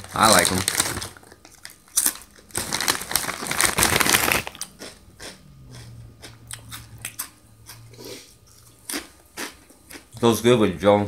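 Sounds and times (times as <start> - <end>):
tortilla chips crunching: 0.0 - 7.8.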